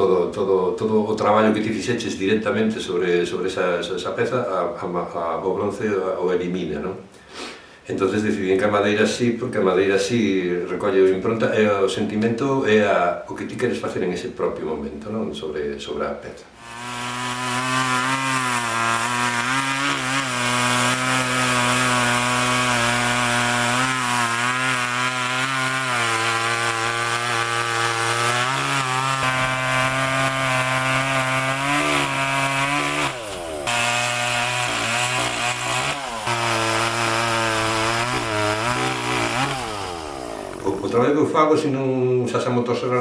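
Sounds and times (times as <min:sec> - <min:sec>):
chainsaw cutting wood: 0:16.6 - 0:41.1.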